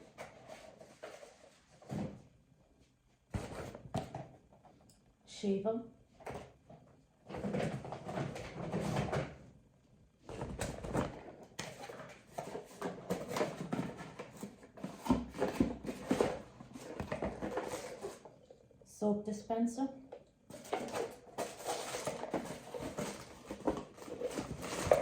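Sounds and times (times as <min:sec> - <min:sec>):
packaging rustling and crinkling: 0:10.3 - 0:18.4, 0:20.5 - 0:25.0.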